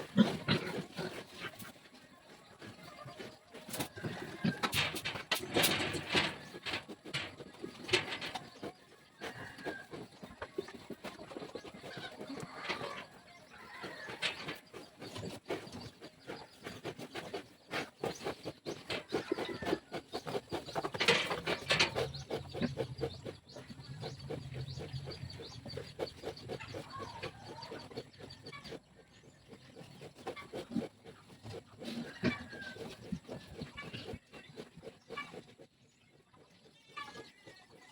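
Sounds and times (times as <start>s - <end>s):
pig grunting: 0.0s - 1.8s, 3.8s - 7.3s
birds calling: 0.0s - 37.6s
knocks and rustles: 3.0s - 27.2s.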